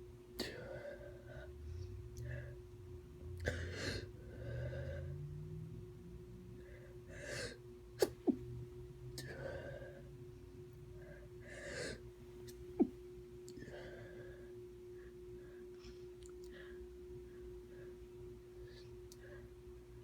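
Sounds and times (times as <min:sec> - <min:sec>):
person sneezing: 0:08.0 - 0:08.4, 0:12.8 - 0:13.0.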